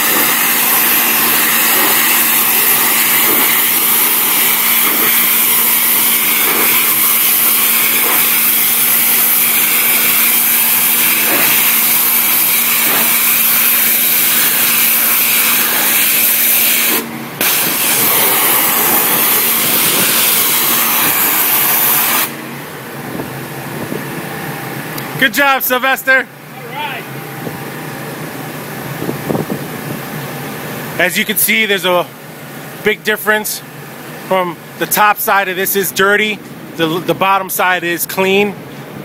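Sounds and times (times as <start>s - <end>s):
pressure washer jet hissing: 0.0s - 22.4s
steady hum: 0.0s - 39.0s.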